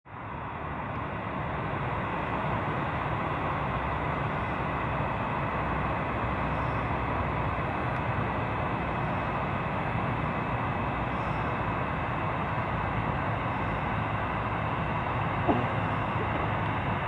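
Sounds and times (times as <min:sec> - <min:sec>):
jet engines rumbling with whine: 0:00.1 - 0:17.0.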